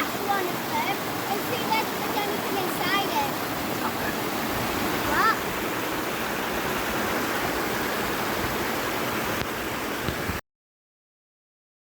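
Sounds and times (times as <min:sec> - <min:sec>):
waterfall rushing: 0:00.0 - 0:10.4.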